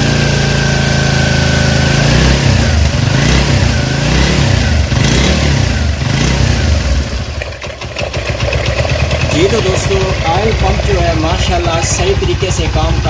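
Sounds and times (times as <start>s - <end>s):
motorcycle engine idling: 0.0s - 13.0s
engine tappet ticking: 7.2s - 13.0s.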